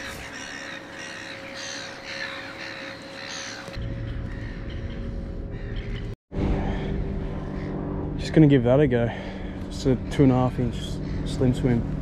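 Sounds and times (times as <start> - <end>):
birds cawing: 0.0 - 6.8, 7.4 - 7.8, 9.4 - 11.7
steady low rumble: 3.7 - 12.0.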